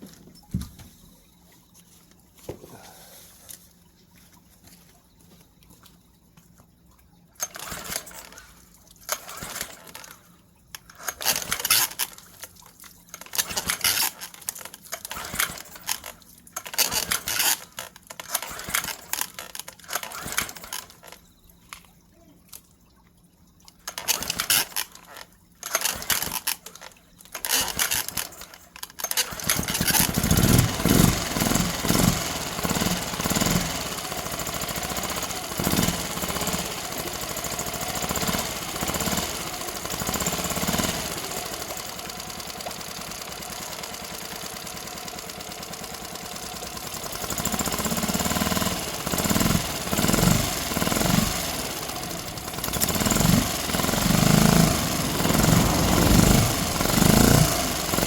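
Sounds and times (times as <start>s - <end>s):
outboard motor idling: 0.0s - 22.6s, 23.4s - 58.0s
handling clicks and clunks: 7.4s - 22.7s, 23.6s - 31.2s.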